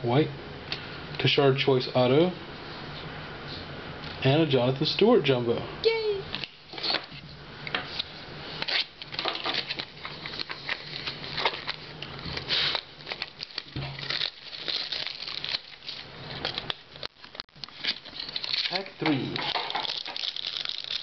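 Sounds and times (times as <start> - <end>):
foil wrapper crinkling and tearing: 8.6 - 21.0.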